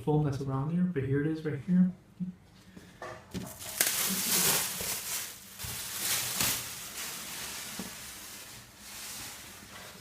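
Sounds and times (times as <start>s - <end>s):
packaging rustling and crinkling: 3.4s - 10.0s.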